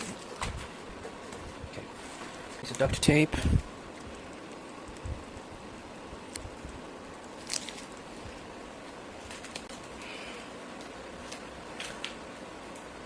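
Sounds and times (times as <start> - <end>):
steady hiss: 0.0 - 13.0
duct tape clicks and crinkles: 6.2 - 8.0, 9.2 - 10.1, 10.7 - 13.0.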